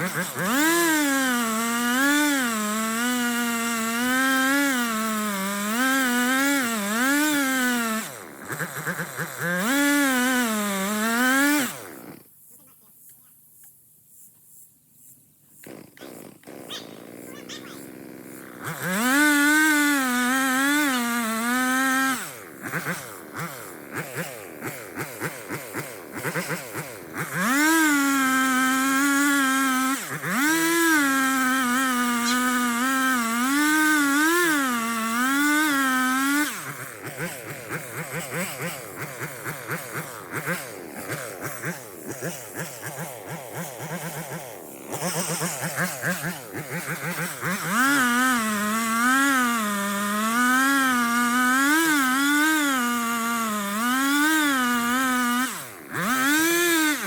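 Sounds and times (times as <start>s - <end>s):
chainsaw cutting into tree: 0.0s - 13.2s, 15.5s - 57.0s.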